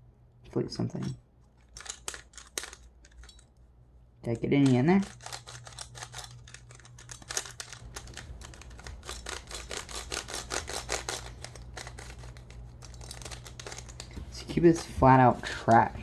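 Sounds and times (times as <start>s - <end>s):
speed cube clicking: 1.6s - 3.3s, 4.6s - 14.1s.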